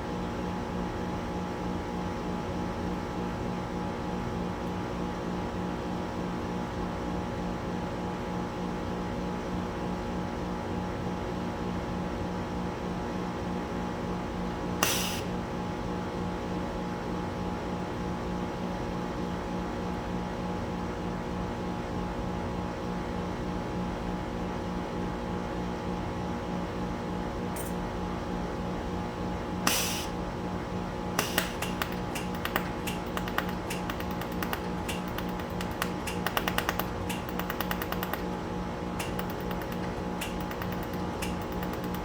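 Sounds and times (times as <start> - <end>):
brief hiss: 14.8 - 15.3, 29.7 - 30.2
laser welder snapping clicks: 14.8 - 15.4, 27.6 - 27.8, 29.7 - 30.2, 31.2 - 42.0
machine hum: 31.1 - 42.0.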